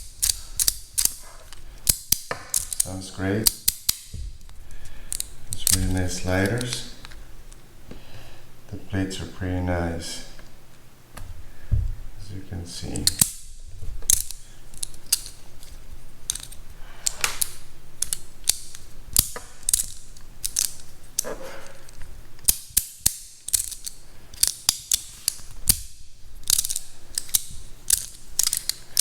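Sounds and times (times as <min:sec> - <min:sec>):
magnetic plates snapping clicks: 0:14.0 - 0:29.0.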